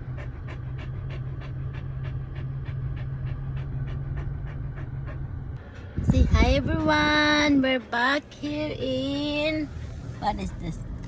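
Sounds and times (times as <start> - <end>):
dog panting rapidly: 0.0 - 10.7
steady low hum: 0.0 - 11.0.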